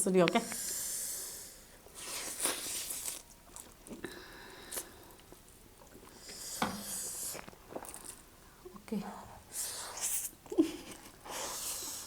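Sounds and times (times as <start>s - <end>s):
chewing and slurping noodles: 1.9s - 8.3s.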